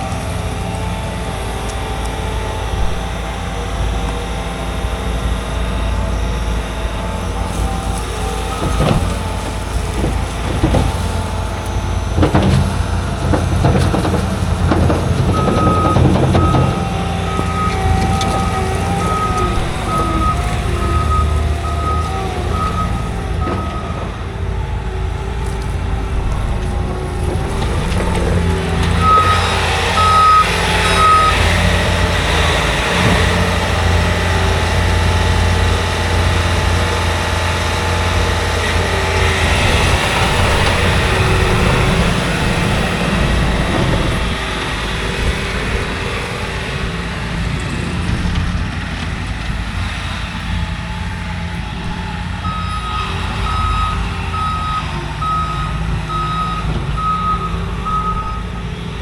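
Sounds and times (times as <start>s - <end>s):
reversing alarm beeping: 0.0s - 36.3s, 51.5s - 59.0s
truck diesel engine rumble: 0.0s - 59.0s.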